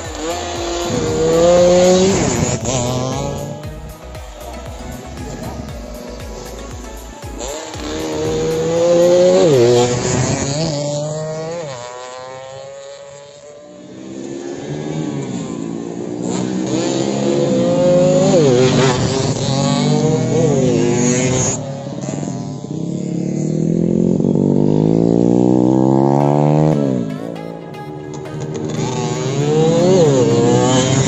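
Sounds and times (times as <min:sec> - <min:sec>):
motorcycles accelerating past: 0:00.0 - 0:31.0.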